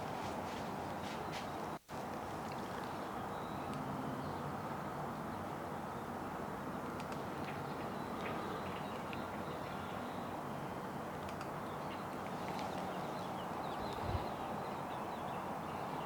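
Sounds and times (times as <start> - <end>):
small birds chirping: 11.3 - 16.0.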